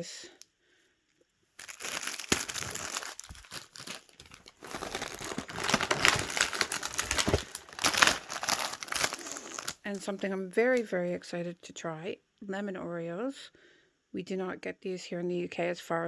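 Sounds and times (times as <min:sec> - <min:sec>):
packaging crinkling and rustling: 0:01.6 - 0:10.8.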